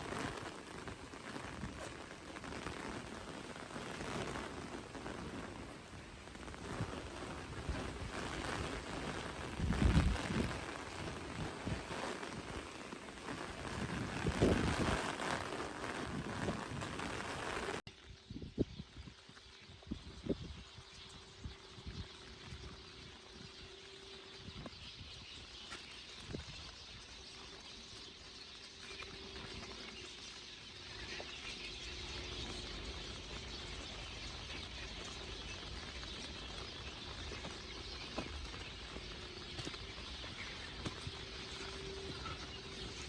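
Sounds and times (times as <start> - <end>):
heavy rain: 0.0 - 17.9, 28.8 - 43.0
rain pattering on umbrella: 0.0 - 18.4, 21.2 - 43.0.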